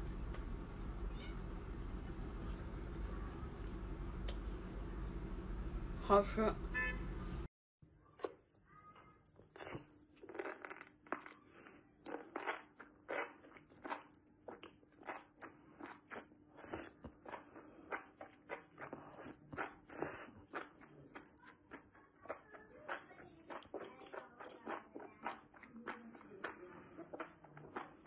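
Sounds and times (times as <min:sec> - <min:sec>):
person chewing crunchy food: 0:09.3 - 0:28.0.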